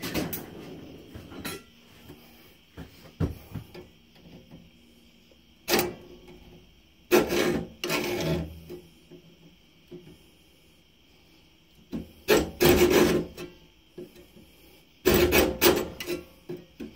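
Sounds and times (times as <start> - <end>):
tools clattering: 1.2 - 1.7
rough scrapes: 7.1 - 8.5.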